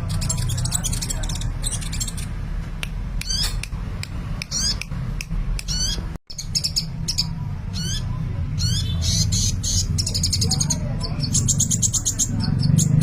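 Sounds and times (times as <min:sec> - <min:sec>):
sunbird singing: 0:00.0 - 0:02.4, 0:05.6 - 0:13.0.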